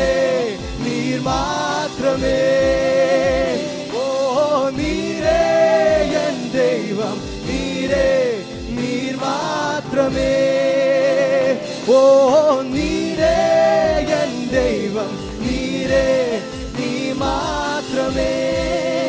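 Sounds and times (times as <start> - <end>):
bass notes: 4.8 - 9.2, 12.8 - 19.0.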